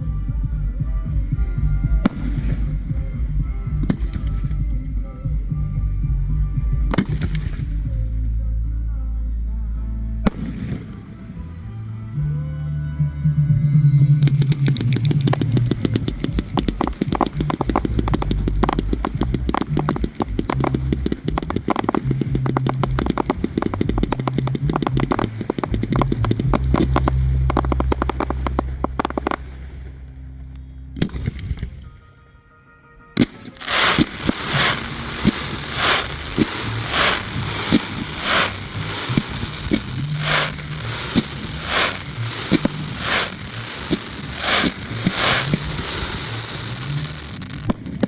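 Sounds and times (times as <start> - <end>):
low music: 0.0 - 47.7
fireworks crackling: 2.1 - 2.8, 3.9 - 4.3, 7.0 - 7.5, 10.3 - 11.5, 14.2 - 31.8, 33.2 - 48.0
sharp crunching thumps: 14.2 - 31.7, 33.2 - 48.0.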